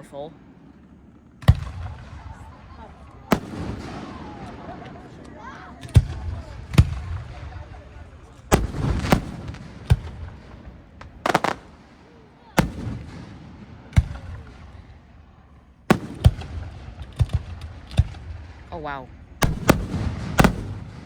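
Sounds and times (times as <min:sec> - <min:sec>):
firework shells booming: 0:03.2 - 0:05.2, 0:08.5 - 0:15.0, 0:15.9 - 0:21.0.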